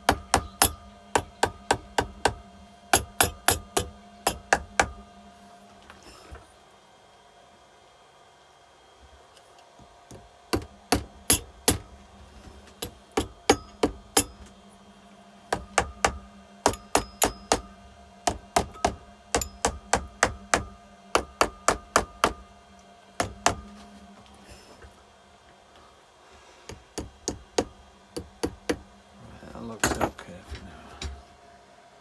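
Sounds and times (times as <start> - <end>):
metallic knocks on engine parts: 12.8 - 14.5, 15.6 - 17.7, 18.3 - 22.4.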